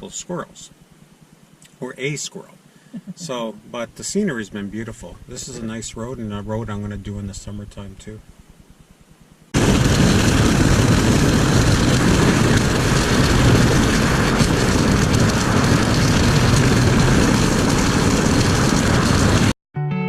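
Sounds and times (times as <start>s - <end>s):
vehicle road noise: 9.6s - 19.5s.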